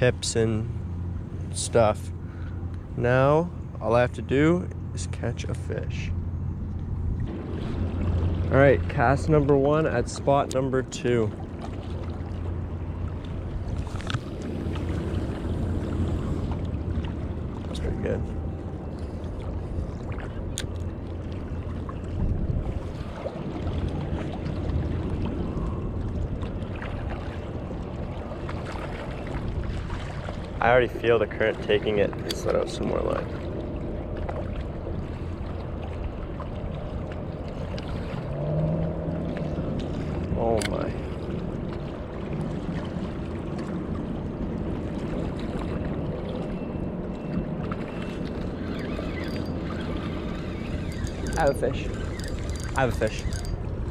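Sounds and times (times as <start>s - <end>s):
river water moving: 0.0s - 53.9s
wind buffeting microphone: 21.6s - 53.9s.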